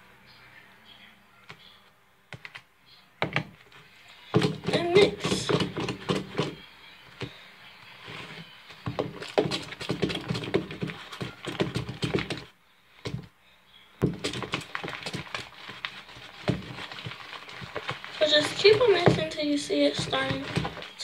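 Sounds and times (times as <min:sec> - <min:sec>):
slime being stirred: 0:04.3 - 0:06.6, 0:08.0 - 0:12.5, 0:14.0 - 0:21.0.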